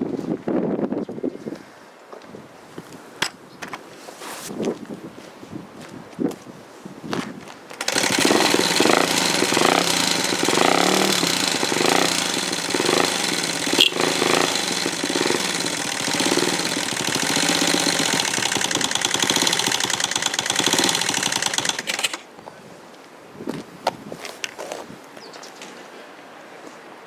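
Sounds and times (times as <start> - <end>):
motorcycle engine idling with clatter: 7.8 - 22.3.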